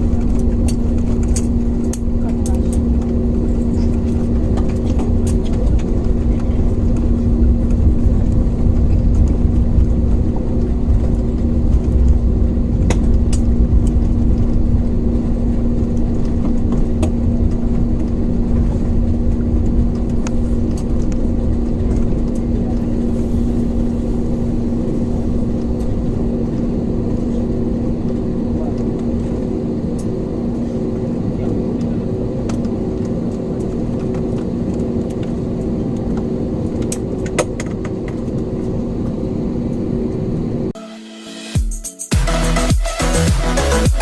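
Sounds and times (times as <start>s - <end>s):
low rumble: 0.0s - 31.4s
engine hum: 0.0s - 40.8s, 42.2s - 44.0s.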